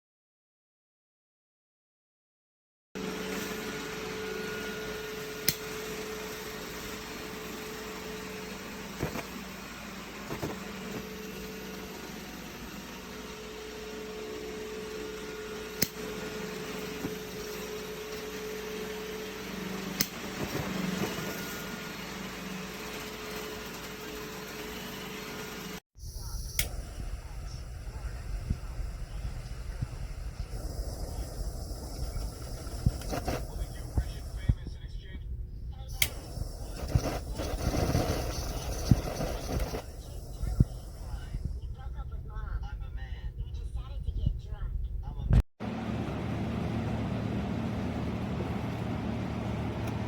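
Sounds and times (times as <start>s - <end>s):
faint hum: 26.0s - 50.0s
steady hiss: 26.2s - 34.6s, 36.0s - 41.6s.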